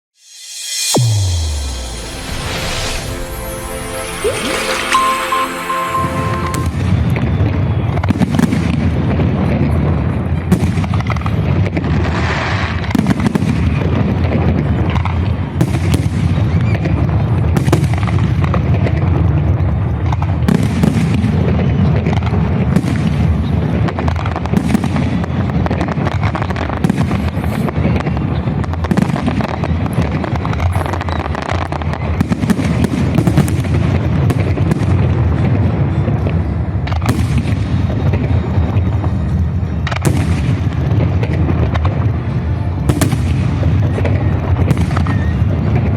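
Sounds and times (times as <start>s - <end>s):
low rumble: 0.4s - 5.0s
fireworks bangs and cracks: 8.0s - 45.9s.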